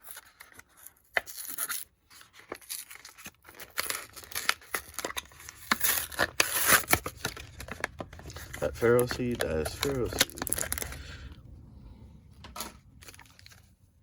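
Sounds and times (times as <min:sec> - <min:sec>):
cards being handled: 0:00.0 - 0:11.0
foil wrapper crinkling and tearing: 0:00.0 - 0:11.4, 0:13.0 - 0:13.8.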